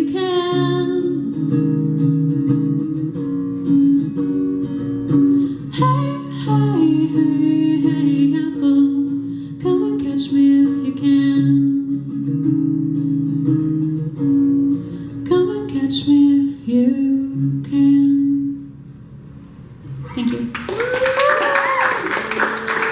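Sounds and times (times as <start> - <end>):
woman singing: 0.0 - 1.5, 5.6 - 12.2, 15.2 - 18.7
strummed acoustic guitar: 0.0 - 20.5.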